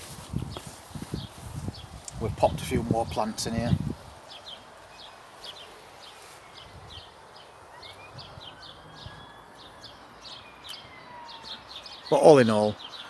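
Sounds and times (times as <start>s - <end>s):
outdoor background hiss: 0.0s - 13.0s
small birds chirping: 0.0s - 13.0s
faint gliding whistles: 7.7s - 12.1s.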